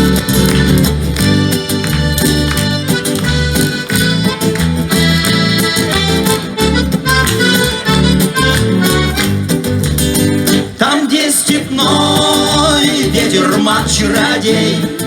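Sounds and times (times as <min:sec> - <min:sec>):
accordion melody: 0:00.0 - 0:10.0
pulsing bass: 0:00.0 - 0:10.7, 0:11.6 - 0:15.0
guitar: 0:00.0 - 0:15.0.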